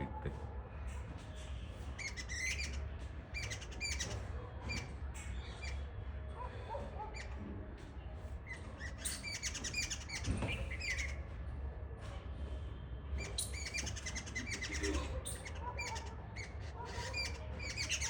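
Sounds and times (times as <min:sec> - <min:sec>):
birds chirping: 0:01.2 - 0:07.4, 0:08.4 - 0:11.3, 0:13.2 - 0:18.0.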